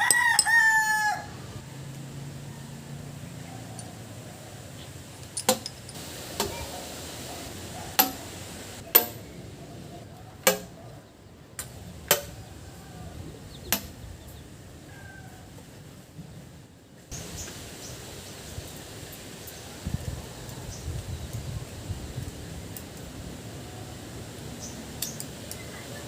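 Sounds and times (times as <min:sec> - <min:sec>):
tools tapping metal engine parts: 0:00.0 - 0:00.6, 0:05.2 - 0:06.6, 0:08.0 - 0:08.3, 0:08.9 - 0:09.3, 0:10.4 - 0:10.8, 0:11.6 - 0:12.4, 0:13.7 - 0:14.0, 0:25.0 - 0:25.7.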